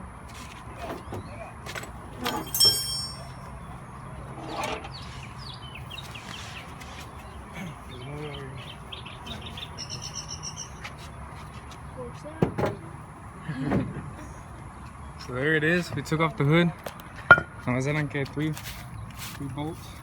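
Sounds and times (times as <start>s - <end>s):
sharp metallic clank: 2.2s - 3.5s
birds chirping: 4.9s - 13.2s.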